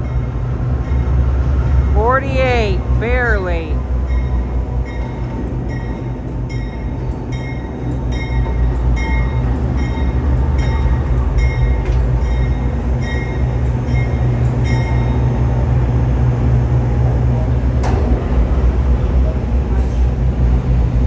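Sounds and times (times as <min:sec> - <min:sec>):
locomotive engine rumbling: 0:08.1 - 0:21.0.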